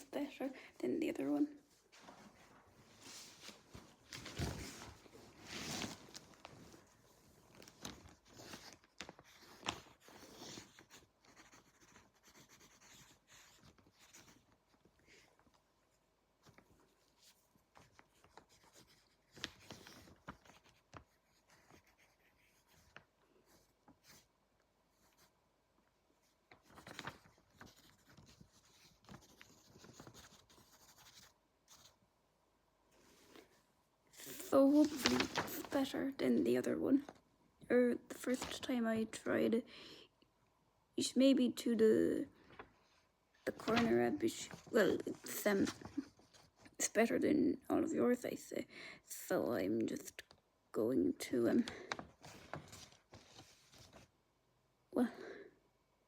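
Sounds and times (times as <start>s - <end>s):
pencil scratching on paper: 9.2s - 14.6s, 20.4s - 24.3s.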